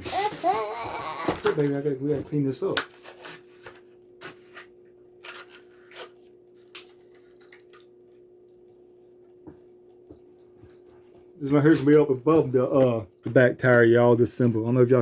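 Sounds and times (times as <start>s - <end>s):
steady low hum: 0.0s - 15.0s
plastic package crinkling: 5.2s - 7.9s.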